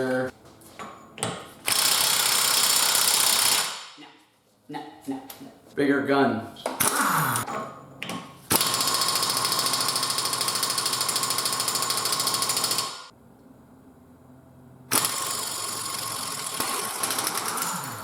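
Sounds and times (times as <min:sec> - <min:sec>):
impact wrench hammering: 0:01.2 - 0:03.9.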